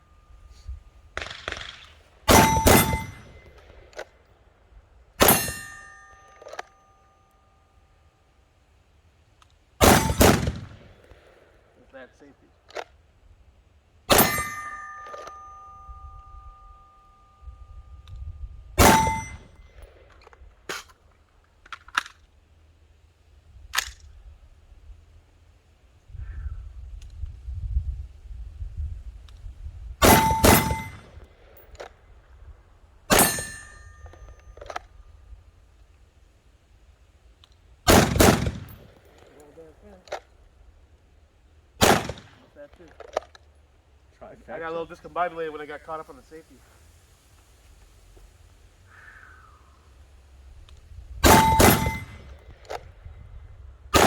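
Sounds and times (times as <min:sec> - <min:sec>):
pistol shots: 0:01.2 - 0:04.0, 0:05.2 - 0:06.0, 0:09.8 - 0:11.2, 0:14.1 - 0:15.4, 0:18.8 - 0:19.4, 0:30.0 - 0:31.1, 0:33.1 - 0:33.9, 0:37.9 - 0:39.3, 0:41.8 - 0:42.5, 0:51.2 - 0:52.8
steel targets clanging: 0:01.2 - 0:04.1, 0:05.2 - 0:07.7, 0:09.8 - 0:10.5, 0:14.1 - 0:17.5, 0:18.8 - 0:20.1, 0:30.0 - 0:31.9, 0:33.1 - 0:34.9, 0:51.2 - 0:52.9.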